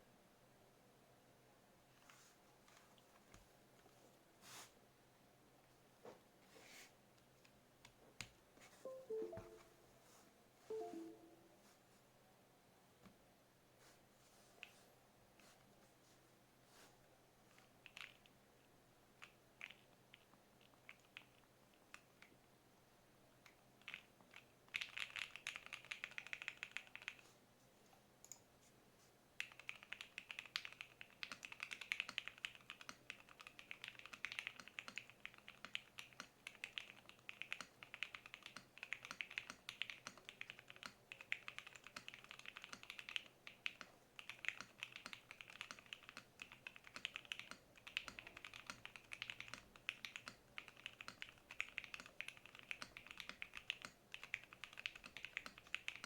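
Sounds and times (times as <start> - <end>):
mechanical keyboard typing: 17.8 - 18.3, 19.2 - 22.3, 23.8 - 27.2, 29.4 - 56.0.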